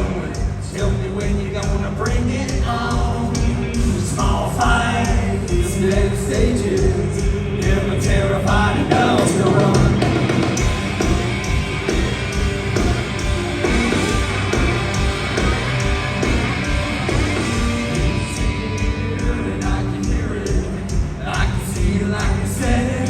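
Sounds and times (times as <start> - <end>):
distorted guitars: 0.0 - 23.0
pounding drums: 0.0 - 23.0
yelled and sung lead vocal: 0.0 - 23.0.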